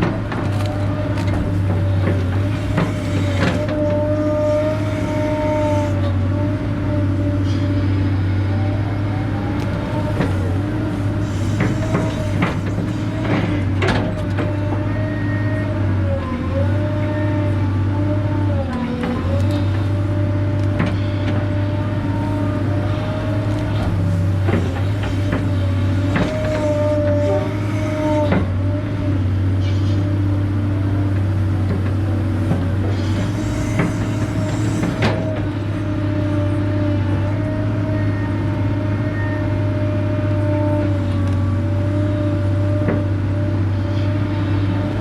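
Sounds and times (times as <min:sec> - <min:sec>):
digging knocks and clanks: 0:00.0 - 0:05.6, 0:09.5 - 0:14.9, 0:19.0 - 0:28.6
excavator diesel engine under load: 0:00.0 - 0:45.0
hydraulic whine: 0:00.0 - 0:45.0.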